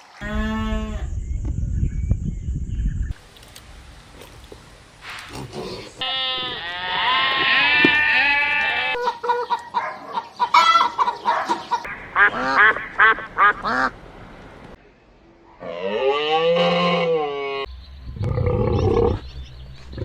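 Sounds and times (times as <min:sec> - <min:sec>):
farm animal calls: 0:05.4 - 0:14.1.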